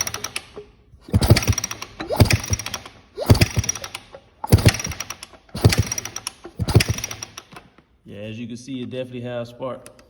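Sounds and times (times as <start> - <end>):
motorcycle kickstarter ratcheting: 0.0 - 7.8.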